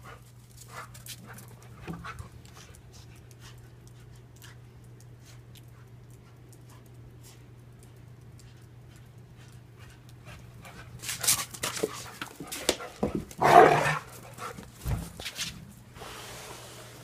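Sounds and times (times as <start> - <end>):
dog panting: 0.0 - 13.4, 14.0 - 14.8.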